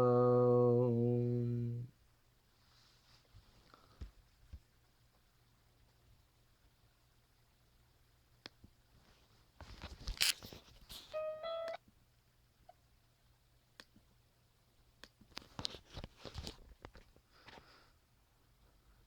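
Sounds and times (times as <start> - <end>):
short beeps: 11.2 - 11.8.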